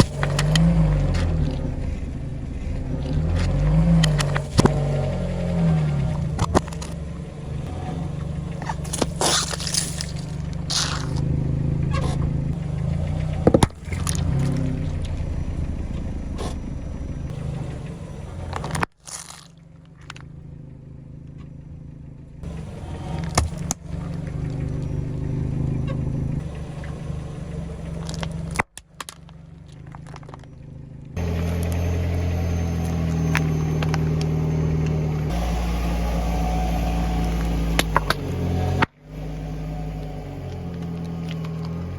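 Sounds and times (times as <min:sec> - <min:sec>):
tyres crushing objects: 0:00.0 - 0:01.7, 0:08.3 - 0:11.3
car engine running slowly: 0:00.0 - 0:41.9
sharp cracks and pops: 0:08.6 - 0:11.3, 0:18.5 - 0:20.3, 0:27.8 - 0:30.6.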